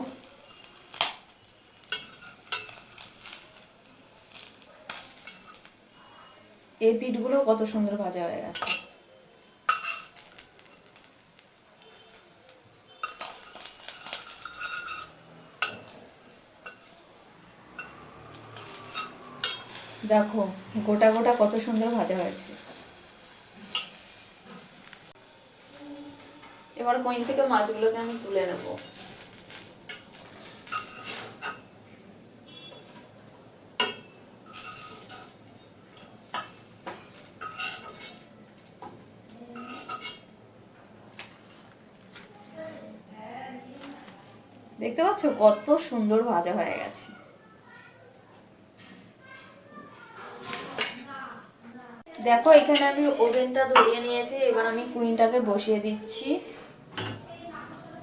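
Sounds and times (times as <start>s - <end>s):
oil sizzling: 0.0s - 40.4s, 52.0s - 58.0s
metal spatula scraping a pan: 0.1s - 6.7s, 8.5s - 11.0s, 12.9s - 17.0s, 17.6s - 31.8s, 33.8s - 38.3s, 39.5s - 40.3s, 52.2s - 57.8s.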